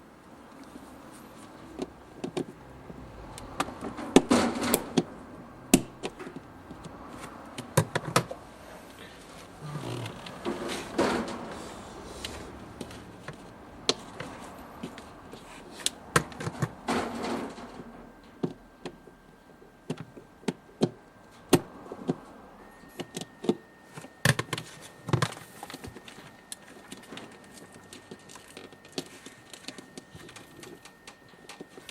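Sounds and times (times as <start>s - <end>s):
hands clicking and knocking on parts: 5.7s - 8.4s, 12.2s - 19.0s
faint steady high tone: 17.4s - 31.9s.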